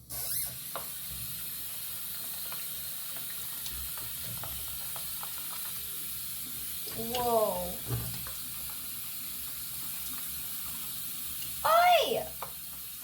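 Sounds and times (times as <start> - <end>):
water running from a tap: 0.0 - 13.0.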